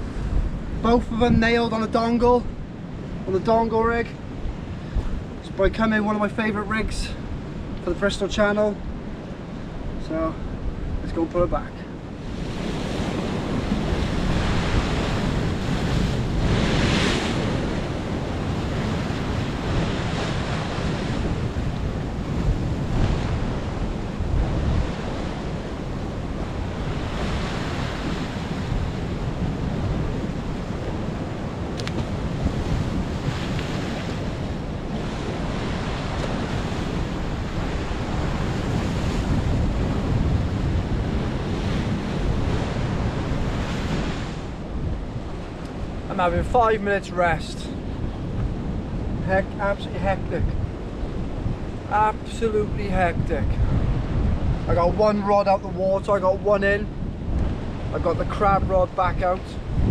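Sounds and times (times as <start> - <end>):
sea waves breaking on shore: 0.0 - 59.9
wind rumbling on microphone: 0.0 - 59.9.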